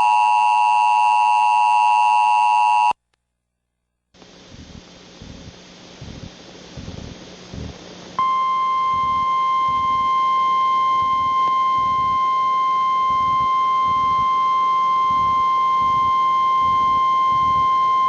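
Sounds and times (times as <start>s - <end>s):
steady alarm tone: 8.2s - 18.0s.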